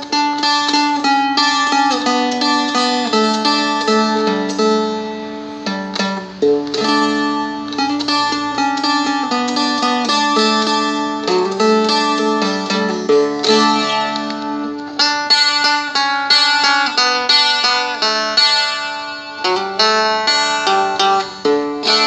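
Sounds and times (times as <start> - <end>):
dulcimer drone note: 0.0 - 22.0
dulcimer picked melody: 0.0 - 22.0.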